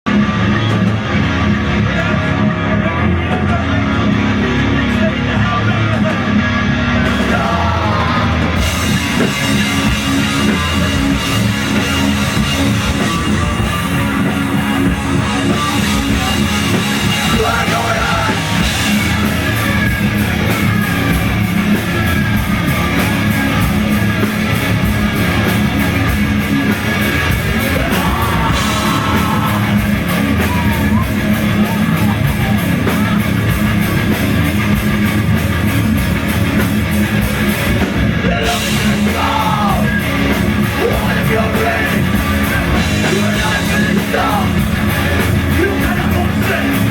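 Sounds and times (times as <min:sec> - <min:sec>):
live rock band playing: 0:00.1 - 0:46.9
cymbals and drums: 0:07.1 - 0:46.9.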